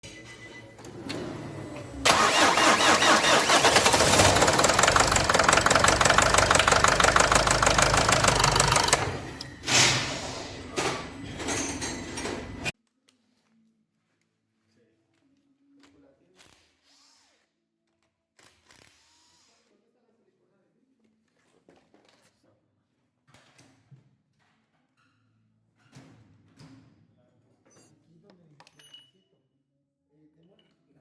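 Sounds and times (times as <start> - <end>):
diesel engine knocking: 2.1 - 9.6.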